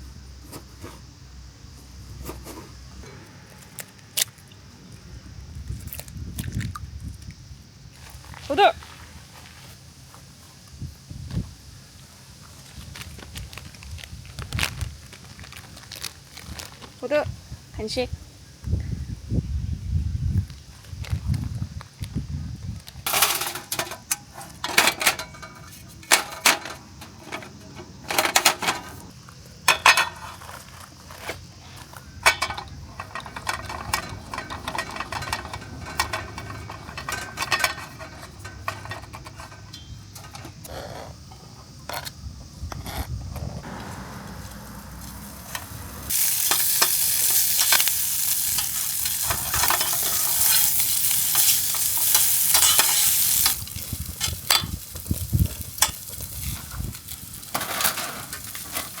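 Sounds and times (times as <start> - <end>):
food sizzling in a hot pan: 45.2 - 57.7
utensils knocking against cookware: 46.5 - 53.6.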